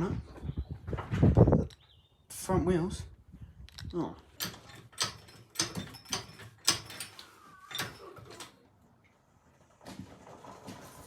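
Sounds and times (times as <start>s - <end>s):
sharp metal knocks and clanks: 3.8s - 8.5s.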